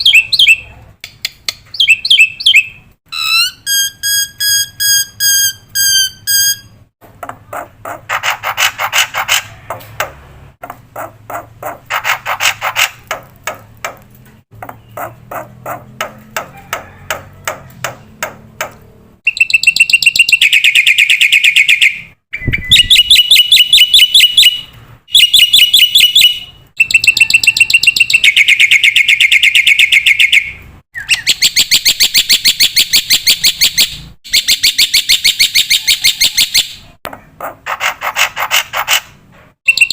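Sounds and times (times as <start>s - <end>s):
bird singing rapid chirps: 0.0s - 0.7s, 1.3s - 6.8s, 14.5s - 18.2s, 19.2s - 36.8s, 39.6s - 39.9s.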